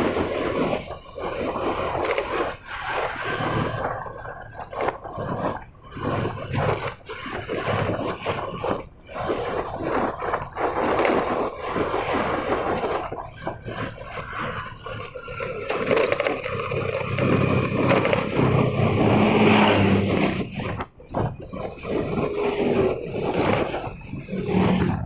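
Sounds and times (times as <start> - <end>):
gusting wind and traffic noise: 0.0 - 25.0
low engine hum: 16.2 - 21.6.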